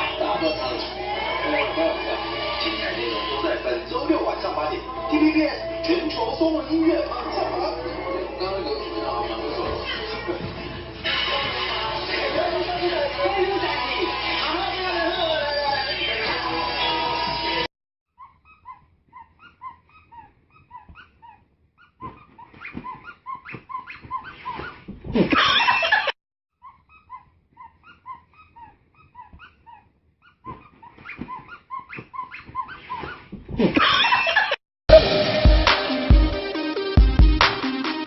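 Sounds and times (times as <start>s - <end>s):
dog whimpering: 18.2s - 24.8s, 26.6s - 33.2s.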